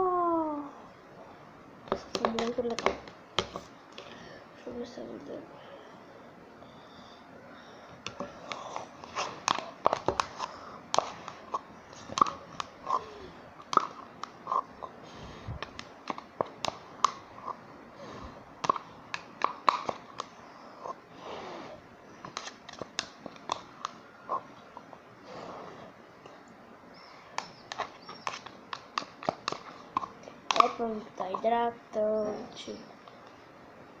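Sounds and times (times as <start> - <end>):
slime squelching and popping: 18.6 - 20.3.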